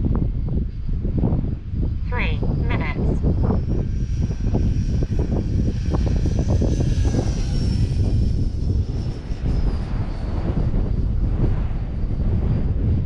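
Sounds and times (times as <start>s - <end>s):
model jet high whine: 0.0s - 13.0s
wind buffeting microphone: 0.0s - 13.0s.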